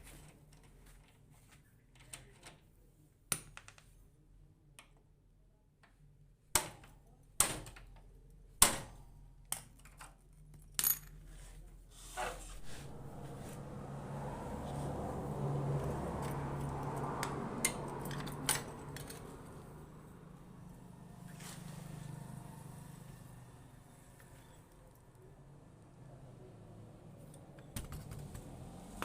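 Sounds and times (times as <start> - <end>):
metal tools clinking: 17.6 - 19.6.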